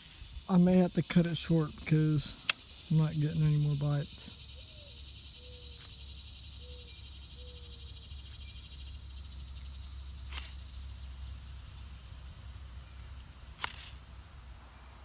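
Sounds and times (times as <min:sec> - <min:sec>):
insects trilling: 0:00.0 - 0:15.0
sharp click: 0:10.3 - 0:10.6, 0:13.6 - 0:14.0.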